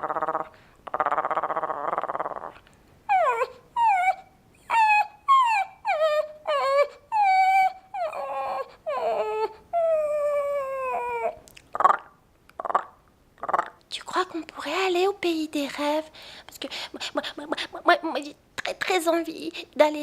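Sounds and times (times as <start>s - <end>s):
person imitating dog whimpering: 0.0s - 13.8s.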